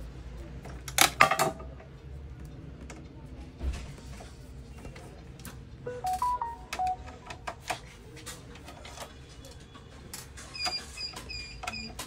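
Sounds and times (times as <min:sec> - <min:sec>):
electronic beep melody: 0:05.9 - 0:07.5.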